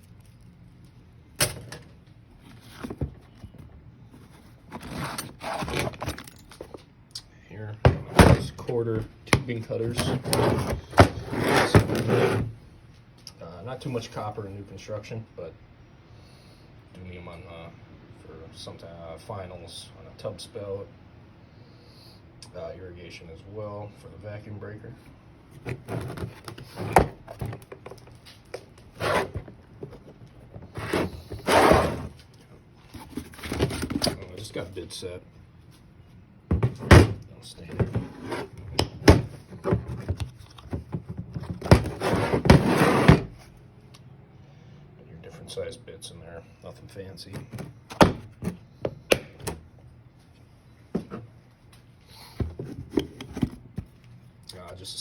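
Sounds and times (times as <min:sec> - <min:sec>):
tools rustling and scraping: 0:00.0 - 0:06.9, 0:09.4 - 0:12.6, 0:25.0 - 0:34.6, 0:36.5 - 0:43.6, 0:50.2 - 0:54.3
hand tools rummaged in a bag: 0:04.2 - 0:06.8.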